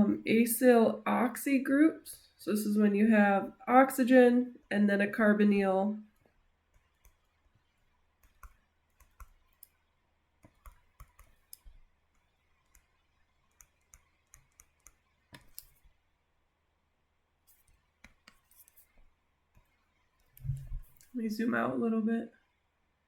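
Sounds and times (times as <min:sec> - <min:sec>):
stylus tapping on tablet screen: 0:08.2 - 0:09.8, 0:10.4 - 0:16.0, 0:17.5 - 0:21.1.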